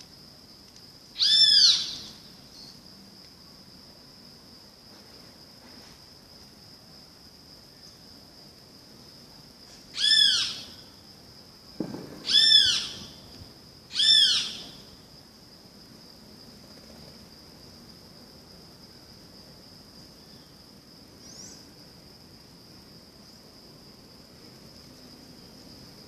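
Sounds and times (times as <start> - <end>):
high insect hum: 0.0 - 26.0
low thump: 11.8 - 12.3.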